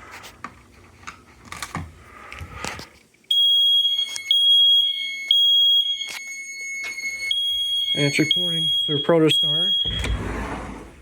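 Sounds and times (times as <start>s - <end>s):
fire alarm horns high tone: 3.3s - 10.2s.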